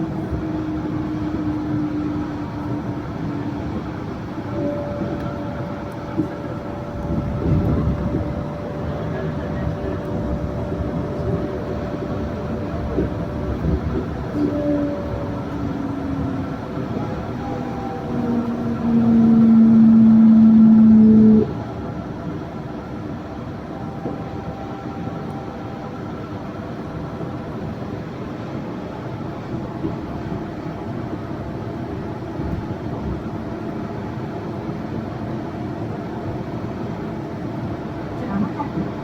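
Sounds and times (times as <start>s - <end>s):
loud steady tone: 0.0s - 27.8s
train running noise: 0.0s - 39.0s.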